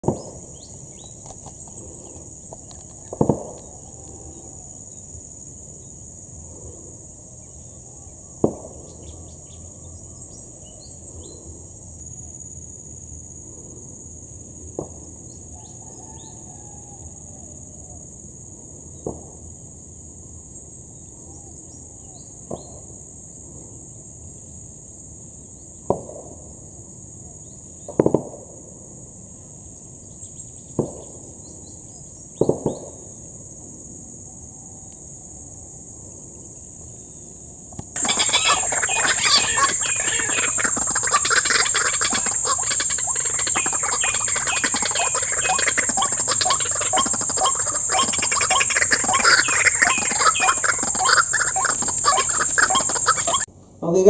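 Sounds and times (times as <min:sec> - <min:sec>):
insects droning: 0:00.2 - 0:08.4, 0:09.0 - 0:19.0, 0:33.5 - 0:54.0.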